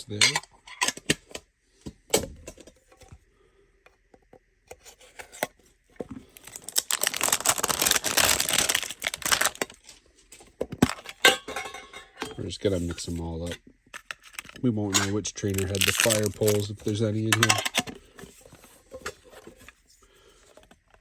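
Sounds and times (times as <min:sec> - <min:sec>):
plastic wrap tearing and crinkling: 0:06.2 - 0:09.9, 0:14.3 - 0:17.8.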